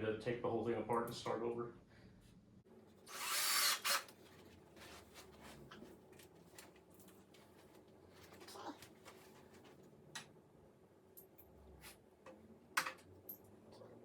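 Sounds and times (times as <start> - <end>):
cordless drill driving screw: 3.1 - 4.2.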